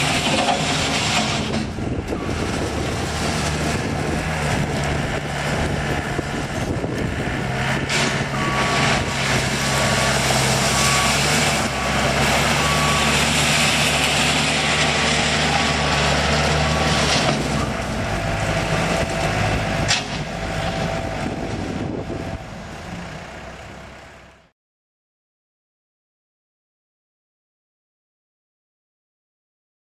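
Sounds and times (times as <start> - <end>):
loader engine running: 0.0 - 24.5
reversing alarm beeping: 2.1 - 3.0, 8.2 - 14.7, 15.3 - 16.0.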